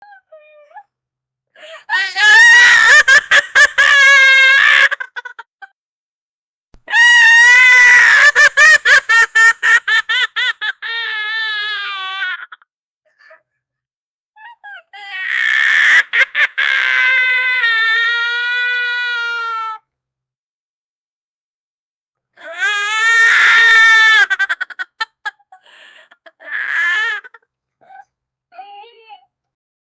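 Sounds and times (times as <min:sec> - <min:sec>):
woman crying hysterically: 0:01.6 - 0:05.8, 0:06.9 - 0:12.6, 0:14.5 - 0:19.8, 0:22.4 - 0:27.4
woman sobbing: 0:01.6 - 0:05.8, 0:06.9 - 0:11.8, 0:22.5 - 0:28.0.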